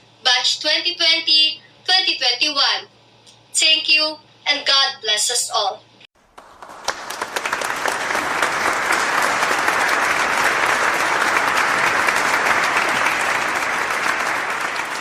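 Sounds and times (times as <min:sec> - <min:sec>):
audience applauding: 0:06.2 - 0:15.0.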